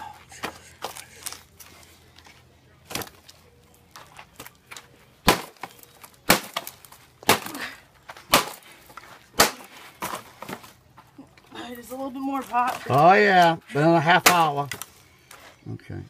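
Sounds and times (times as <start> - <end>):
machete chopping into debris: 2.9 - 3.2, 5.2 - 7.6, 8.3 - 8.6, 9.4 - 10.6.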